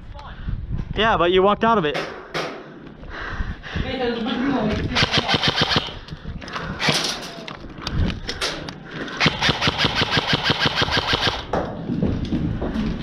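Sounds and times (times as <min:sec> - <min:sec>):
airsoft gun full-auto bursts: 0:05.0 - 0:06.0, 0:09.2 - 0:11.5.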